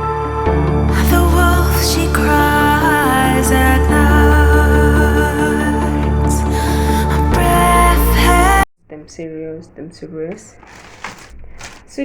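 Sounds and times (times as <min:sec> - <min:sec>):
deep bass music with sustained notes: 0:00.0 - 0:08.7.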